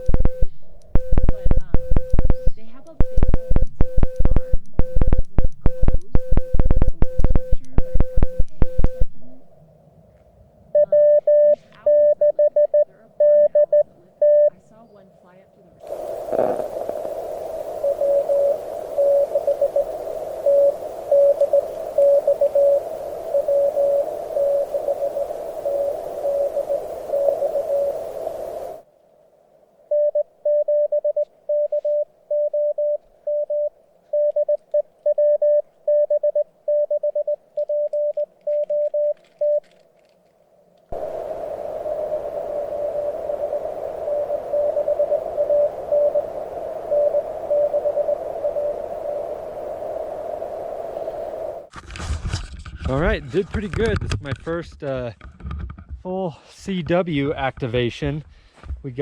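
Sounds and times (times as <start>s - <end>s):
morse code tone: 0.0s - 9.5s, 10.8s - 14.8s, 15.8s - 28.8s, 29.9s - 39.7s, 40.9s - 49.9s
radio band noise hiss: 0.0s - 9.7s, 10.8s - 28.9s, 40.9s - 52.2s.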